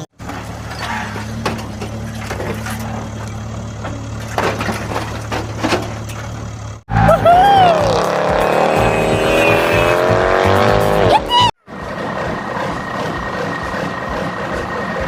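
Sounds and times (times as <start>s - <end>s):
whistling tone gliding: 8.8s - 10.0s.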